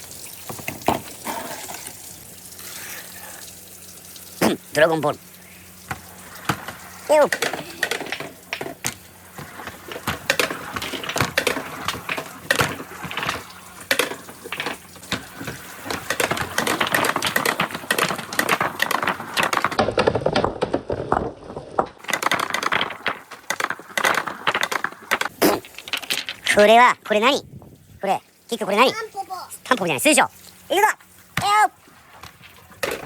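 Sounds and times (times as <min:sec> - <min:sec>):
marbles clattering along track: 0:07.2 - 0:27.2.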